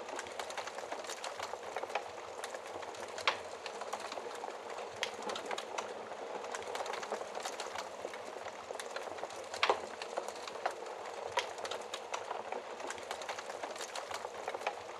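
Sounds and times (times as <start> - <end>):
wood fire crackling and popping: 0.0 - 14.9.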